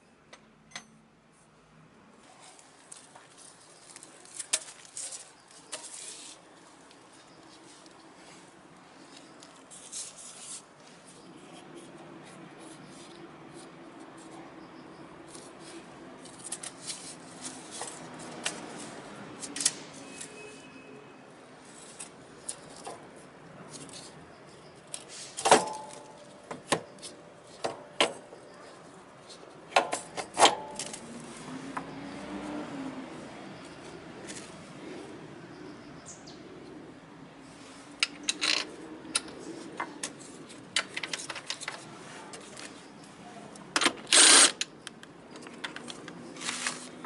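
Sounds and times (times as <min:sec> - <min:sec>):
hand tools clicking and tapping: 0:38.0 - 0:42.8, 0:43.6 - 0:47.0.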